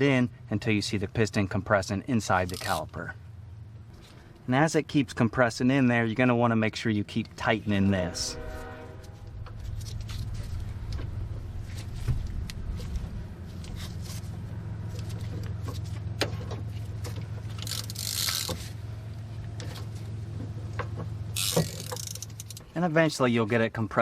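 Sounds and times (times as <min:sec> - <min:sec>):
low hum: 0:07.8 - 0:22.6
hand ratchet clicking: 0:17.5 - 0:18.6, 0:21.3 - 0:22.7.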